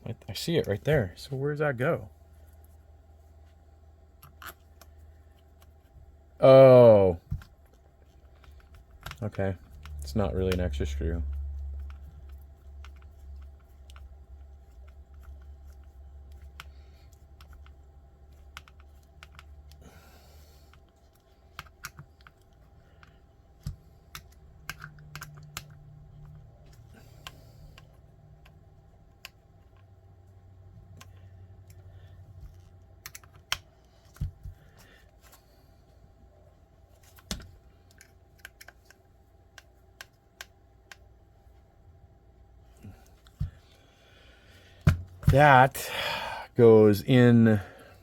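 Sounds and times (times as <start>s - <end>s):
plastic parts clicking and tapping: 7.2s - 19.8s, 20.7s - 29.9s, 30.8s - 34.9s, 37.0s - 41.1s.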